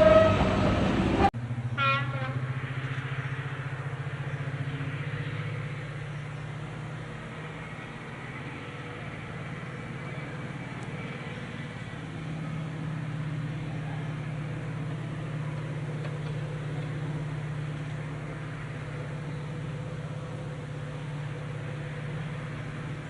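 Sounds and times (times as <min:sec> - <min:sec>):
diesel locomotive engine humming: 0:00.0 - 0:23.0.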